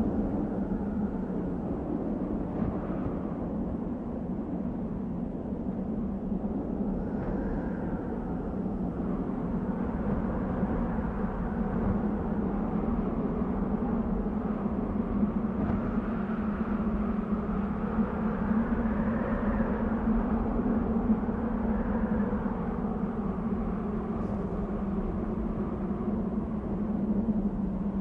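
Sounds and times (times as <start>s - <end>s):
wind blowing with whistling: 0.0s - 28.0s.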